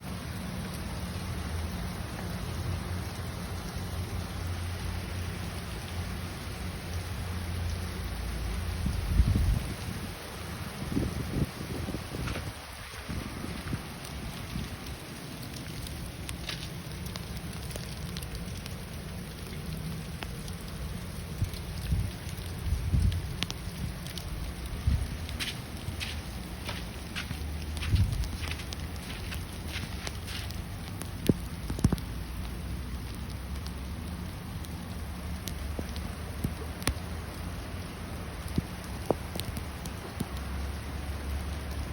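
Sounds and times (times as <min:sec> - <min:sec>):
hail rushing hiss: 0:08.3 - 0:32.5
hailstones ticking on hard surfaces: 0:08.5 - 0:41.9.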